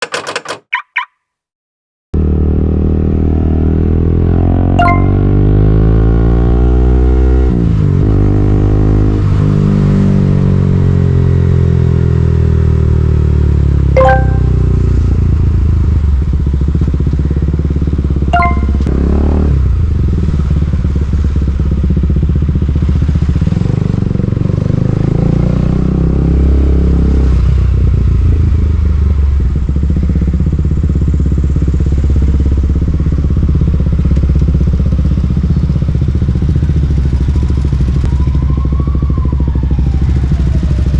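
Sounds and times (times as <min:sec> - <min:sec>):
short sharp high sounds: 0:04.8 - 0:05.4, 0:14.0 - 0:14.8, 0:18.4 - 0:18.9.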